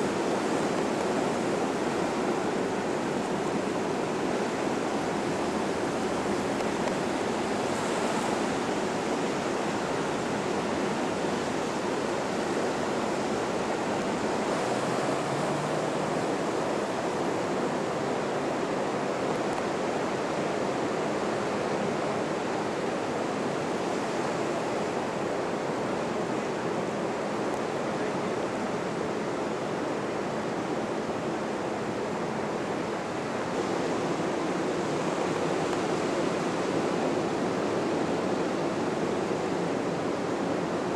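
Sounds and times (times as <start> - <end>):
ocean surf breaking: 0.0 - 40.9
wind: 0.0 - 40.9.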